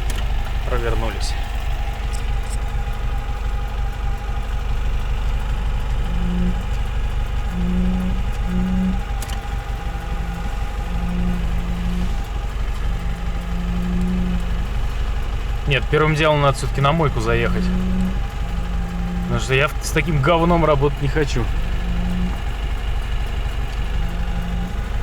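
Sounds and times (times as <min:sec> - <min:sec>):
car engine knocking: 0:00.0 - 0:25.0.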